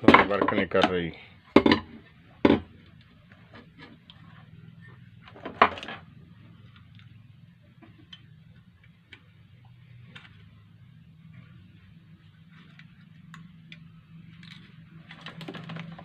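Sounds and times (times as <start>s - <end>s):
small clicks and ticks from handling parts: 12.5s - 14.7s.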